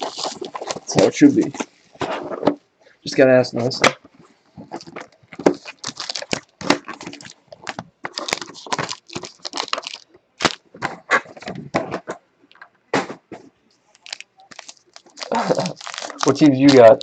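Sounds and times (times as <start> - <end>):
wrappers crinkling and tearing: 0.0 - 1.4, 4.7 - 10.6, 13.9 - 17.0.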